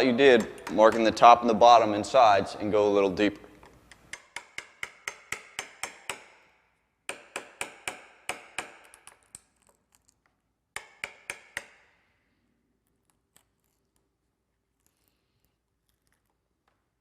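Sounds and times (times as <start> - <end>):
hammer striking wood chisel: 0.0 - 1.6, 3.3 - 9.3, 10.8 - 11.9.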